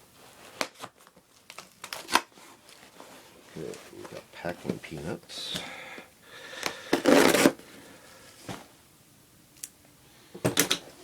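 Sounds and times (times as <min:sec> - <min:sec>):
packing peanuts rustling and squeaking: 0:00.4 - 0:04.2.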